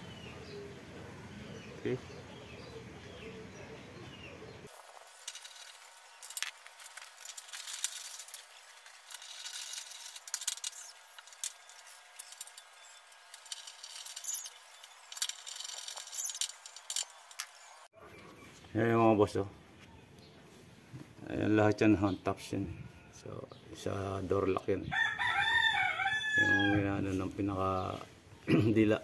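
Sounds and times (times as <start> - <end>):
metallic clinks and rattles: 5.1 - 17.6.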